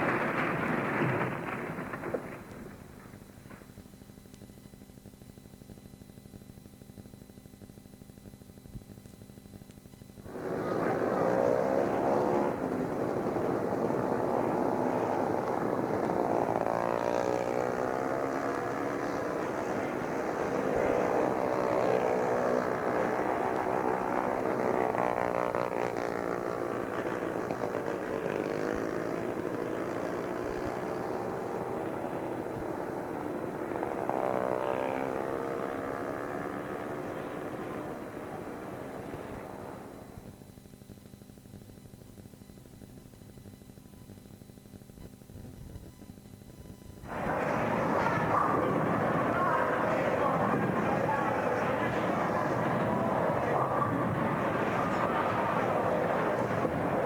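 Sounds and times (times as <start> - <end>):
engine pitch swinging up and down: 10.1 - 40.6, 46.9 - 57.0.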